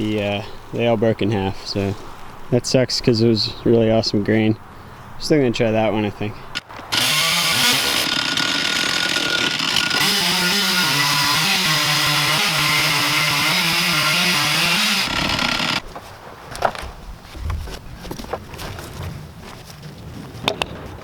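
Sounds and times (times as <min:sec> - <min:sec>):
chainsaw cutting log: 0:06.6 - 0:15.8.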